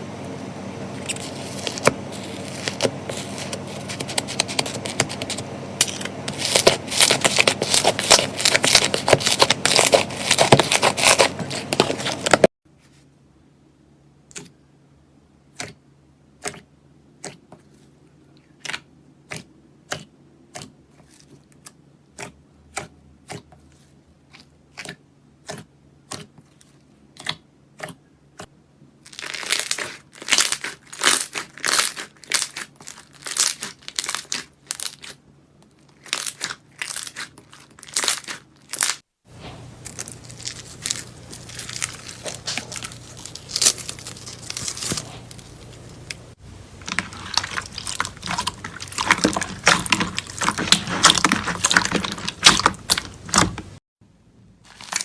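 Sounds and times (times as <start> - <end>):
slime crackling and squelching: 0.9 - 12.5, 29.0 - 53.8, 54.7 - 55.0.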